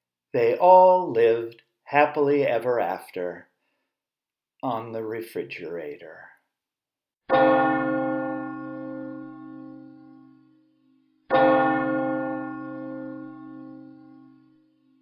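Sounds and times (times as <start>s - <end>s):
large bell tolling: 7.3s - 10.6s, 11.3s - 15.0s.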